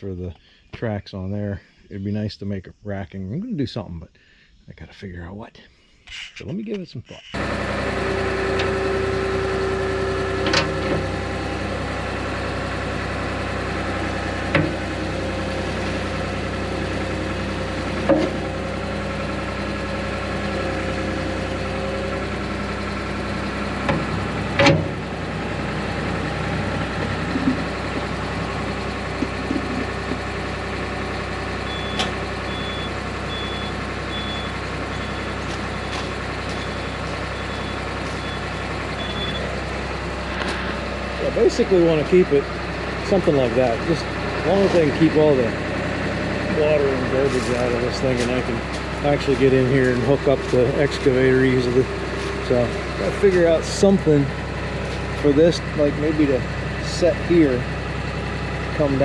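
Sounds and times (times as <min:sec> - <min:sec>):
excavator engine idling: 0:07.3 - 0:59.0
high-pitched warning alarm beeping: 0:31.6 - 0:39.5.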